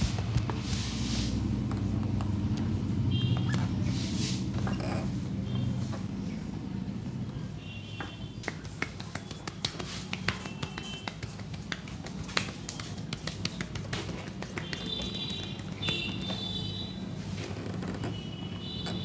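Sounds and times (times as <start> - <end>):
hands tapping on head and neck: 8.0 - 16.7.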